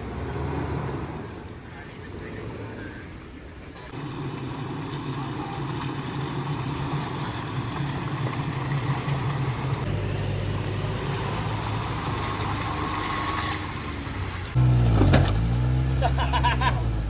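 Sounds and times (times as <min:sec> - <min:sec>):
suv engine running: 0:03.8 - 0:17.0.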